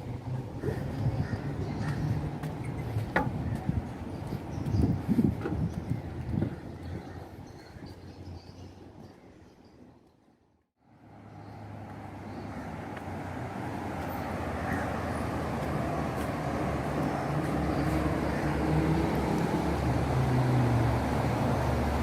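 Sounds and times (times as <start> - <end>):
traffic noise: 0.0 - 22.0
engine humming: 10.9 - 22.0.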